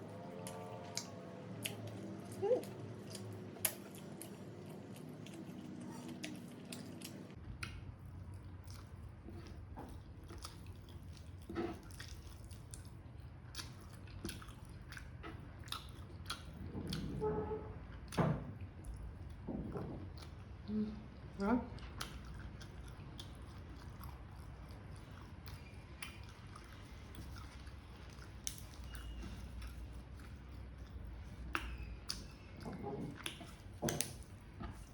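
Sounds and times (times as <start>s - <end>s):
chewing food: 0.0s - 34.9s
wet mouth clicks and smacks: 25.4s - 26.4s.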